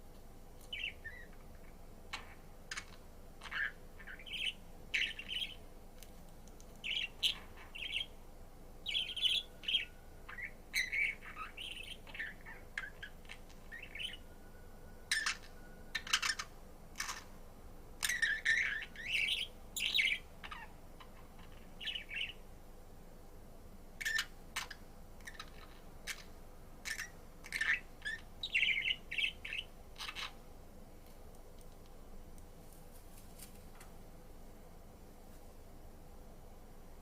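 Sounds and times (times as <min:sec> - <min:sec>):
budgerigar chirping and chattering: 0:00.7 - 0:01.4, 0:02.1 - 0:05.6, 0:06.8 - 0:08.1, 0:08.8 - 0:14.2, 0:15.1 - 0:17.3, 0:18.0 - 0:22.4, 0:24.0 - 0:30.4.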